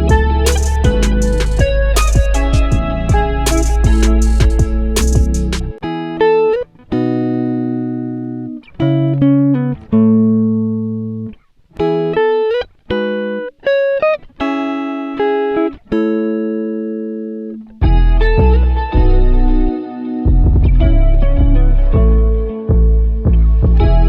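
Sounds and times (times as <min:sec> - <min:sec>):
plucked guitar chords: 0:00.0 - 0:24.0.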